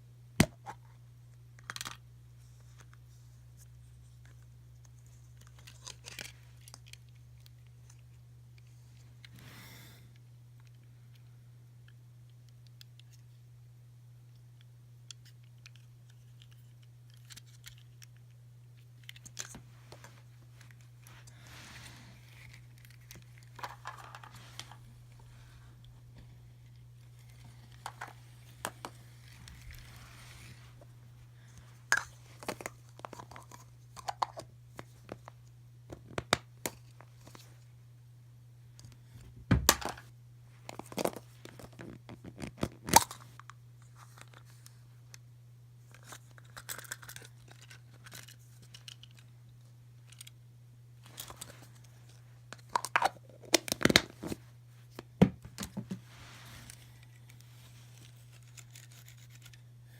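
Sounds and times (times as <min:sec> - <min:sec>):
steady low hum: 0:00.0 - 0:59.9
toy packaging crinkling and tearing: 0:05.0 - 0:08.1, 0:19.0 - 0:25.9, 0:40.7 - 0:44.8, 0:45.9 - 0:49.2, 0:51.0 - 0:54.4, 0:56.6 - 0:59.7.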